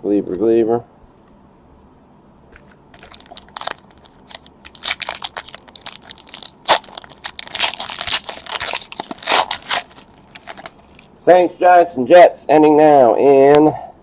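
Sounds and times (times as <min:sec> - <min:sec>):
card pack wrappers crinkling: 0:02.6 - 0:11.1
wrapper ripping: 0:02.9 - 0:11.1.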